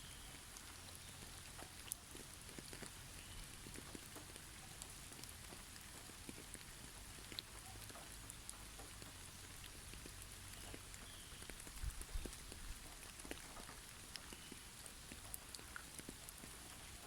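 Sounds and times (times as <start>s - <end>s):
faint bird chirps: 0.0s - 1.2s
soft steady hiss: 0.0s - 17.0s.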